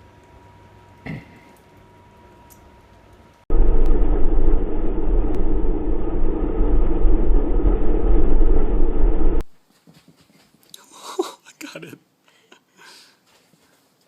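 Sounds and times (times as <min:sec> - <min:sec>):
loud rumbling with low hum: 0:03.5 - 0:09.5.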